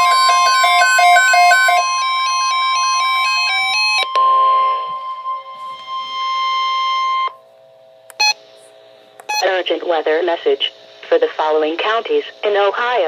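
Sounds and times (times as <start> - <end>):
fast electronic beeping melody: 0.0 - 7.4, 8.1 - 8.4, 9.3 - 9.5
steady high alarm beep: 0.0 - 9.6.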